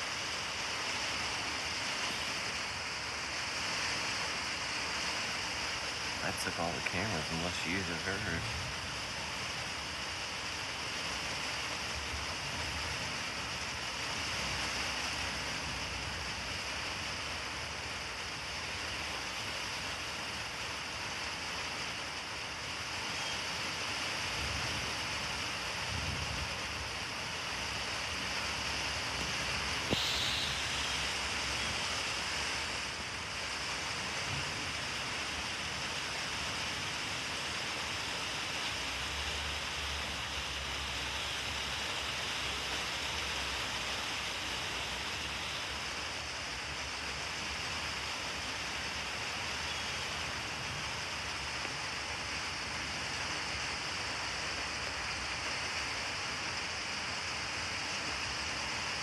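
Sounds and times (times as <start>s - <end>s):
rain hissing: 0.0s - 59.0s
brief sharp sound: 29.9s - 31.2s.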